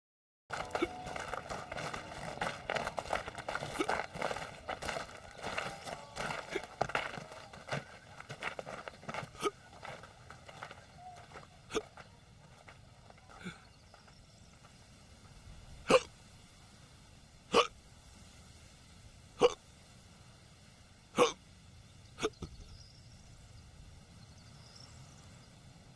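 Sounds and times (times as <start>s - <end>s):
old man hiccuping: 15.9s - 16.1s, 17.5s - 17.7s, 19.4s - 19.6s, 21.2s - 21.4s.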